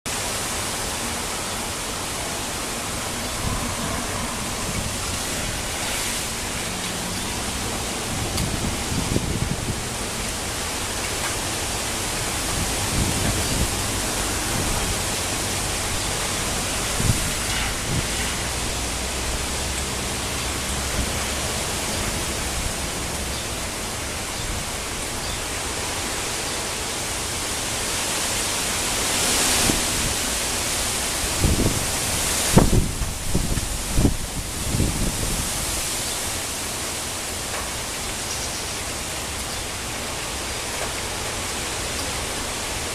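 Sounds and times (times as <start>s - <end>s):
rain hissing: 0.1s - 42.9s
wind gusts buffeting microphone: 1.6s - 26.0s, 28.0s - 36.4s.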